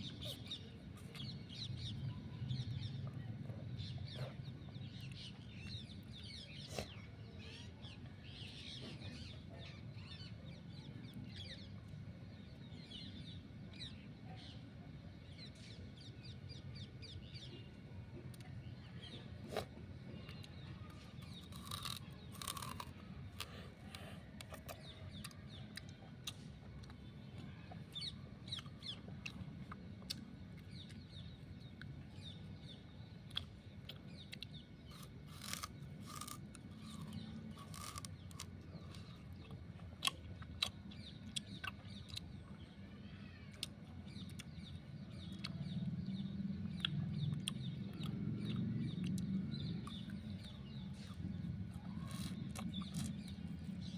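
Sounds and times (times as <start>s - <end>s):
sugarcane being chewed: 19.4s - 42.6s, 43.6s - 53.9s.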